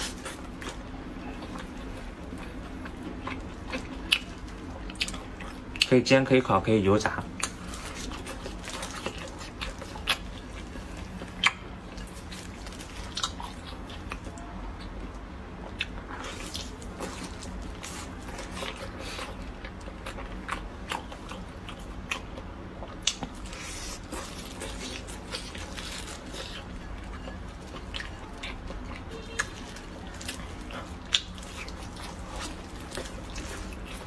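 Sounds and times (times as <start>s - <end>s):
biting and chewing food: 0.0s - 5.9s, 7.1s - 34.0s
steady low hum: 0.0s - 34.0s.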